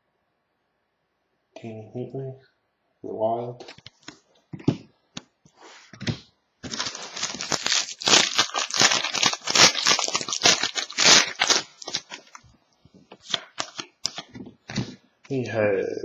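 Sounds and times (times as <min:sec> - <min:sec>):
wrapper being torn and crumpled: 0:06.6 - 0:12.4, 0:13.2 - 0:14.3.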